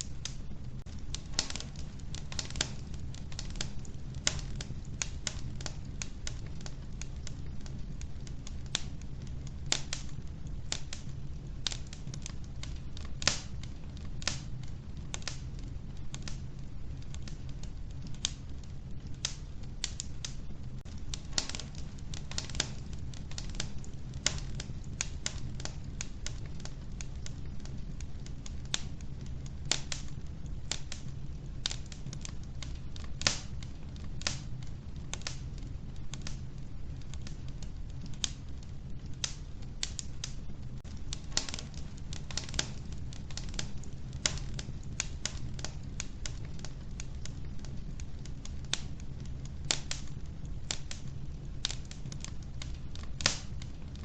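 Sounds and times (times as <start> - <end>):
logs crackling and popping: 0.0 - 54.0
stove fire low rumble: 0.0 - 54.0.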